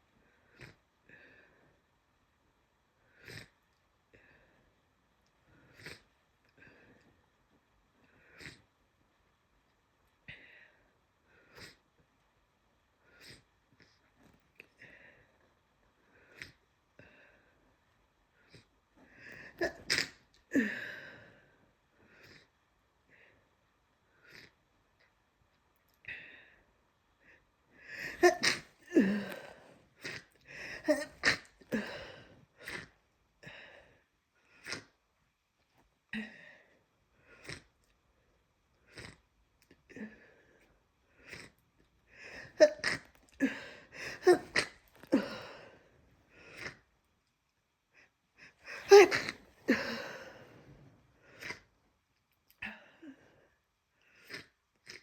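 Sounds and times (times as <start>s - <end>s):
loud sneeze: 19.6s - 20.2s, 28.1s - 29.2s, 44.1s - 44.8s, 48.8s - 50.0s
person sneezing: 28.0s - 29.6s, 30.8s - 31.9s, 42.6s - 45.4s, 48.7s - 50.2s.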